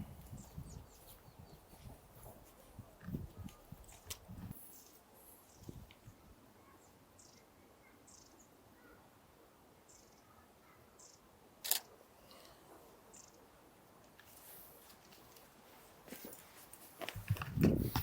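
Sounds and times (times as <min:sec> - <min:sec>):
faint bird chirps: 0:06.6 - 0:09.1.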